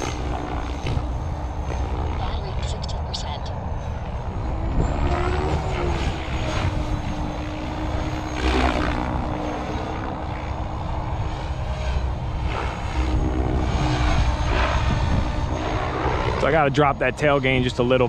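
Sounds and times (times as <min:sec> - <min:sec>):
low rumble: 0:00.0 - 0:17.7
rc helicopter motor whine: 0:00.0 - 0:18.0
rotor blades whooshing: 0:00.0 - 0:18.0.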